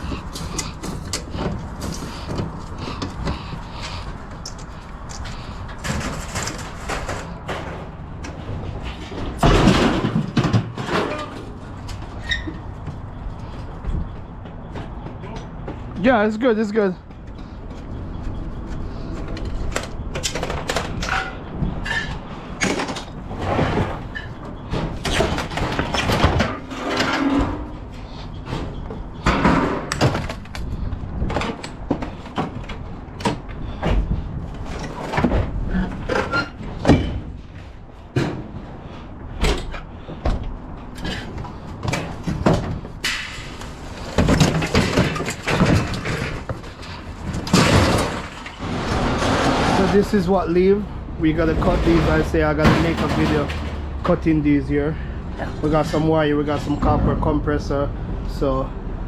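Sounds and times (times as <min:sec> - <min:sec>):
scrap metal clattering: 0:20.4 - 0:30.4, 0:41.0 - 0:50.2, 0:51.4 - 0:54.1.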